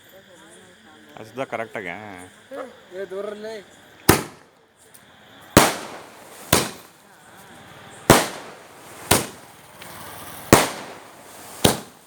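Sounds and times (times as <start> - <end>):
fireworks bangs: 4.0 - 4.5, 5.6 - 7.0, 7.9 - 12.0.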